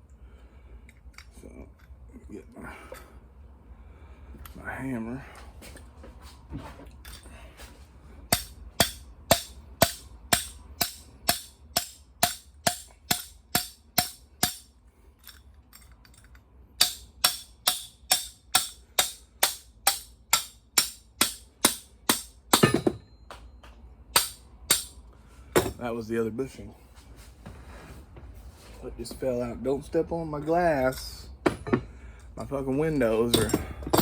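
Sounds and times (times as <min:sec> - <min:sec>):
hammer striking metal bushing: 0:08.3 - 0:14.7, 0:16.8 - 0:23.1, 0:24.1 - 0:25.0, 0:33.1 - 0:34.0.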